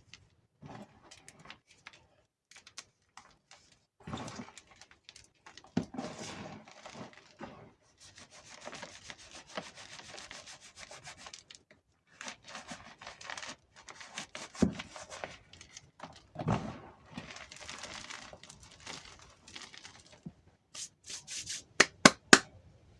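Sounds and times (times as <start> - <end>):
chalk crunching between fingers: 20.8 - 22.2.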